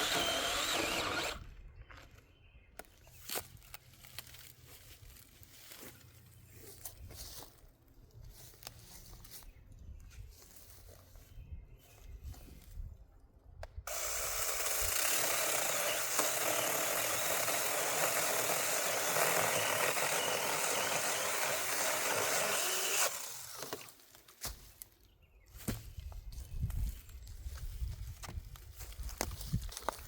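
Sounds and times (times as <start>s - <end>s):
mini chainsaw cutting wood: 0.0s - 1.4s, 13.9s - 24.1s.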